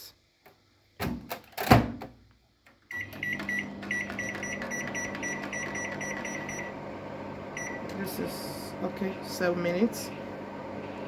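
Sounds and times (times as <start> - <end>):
microwave humming: 2.8 - 11.0.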